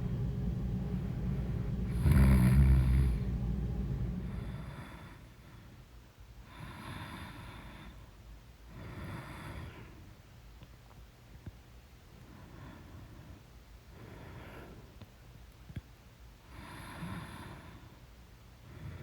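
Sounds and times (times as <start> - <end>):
quiet breaths: 0.0 - 19.0
loud low snore: 1.9 - 3.6.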